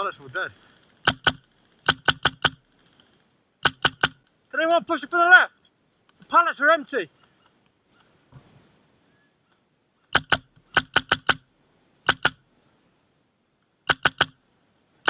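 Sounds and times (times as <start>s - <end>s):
airsoft rifle shots: 1.0s - 2.6s, 3.6s - 4.2s, 10.1s - 11.4s.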